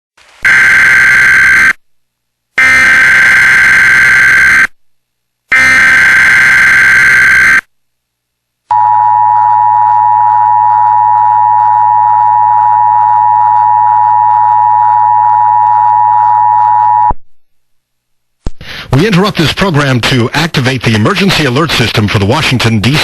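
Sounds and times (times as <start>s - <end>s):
buzzing data tones: 2.6s - 4.7s, 5.5s - 7.7s.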